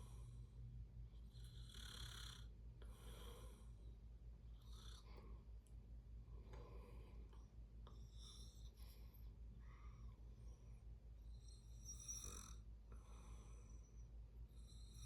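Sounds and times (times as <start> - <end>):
steady low hum: 0.0 - 15.0
person breathing softly: 2.8 - 4.0, 6.3 - 10.7, 12.9 - 14.2.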